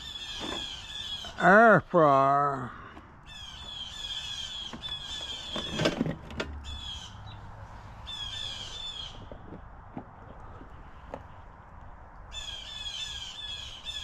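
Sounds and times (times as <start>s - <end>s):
bird squawking: 0.0s - 1.8s, 3.3s - 5.9s, 6.6s - 7.4s, 8.1s - 9.3s, 12.3s - 14.0s.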